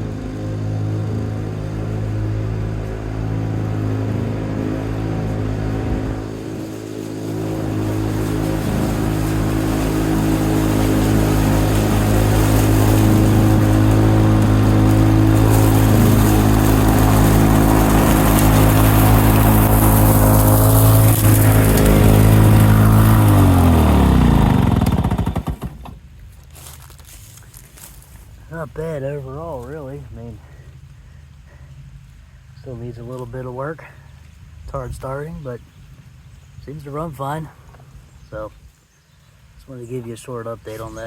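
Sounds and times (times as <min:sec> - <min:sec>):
engine winding down: 0:00.0 - 0:26.1
lawn mower engine running: 0:00.0 - 0:32.1.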